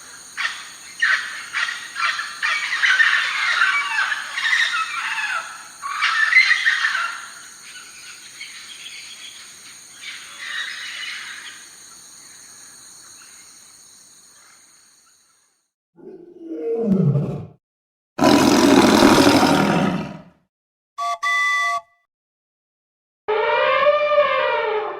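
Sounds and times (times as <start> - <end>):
insect drone: 0.0 - 15.7
low roar falling in pitch: 16.0 - 17.6, 18.2 - 20.3.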